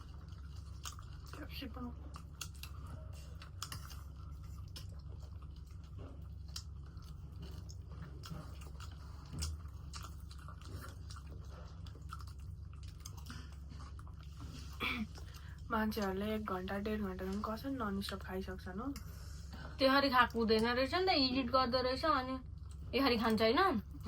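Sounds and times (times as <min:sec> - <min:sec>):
chewing food: 0:00.0 - 0:20.8, 0:22.4 - 0:24.0.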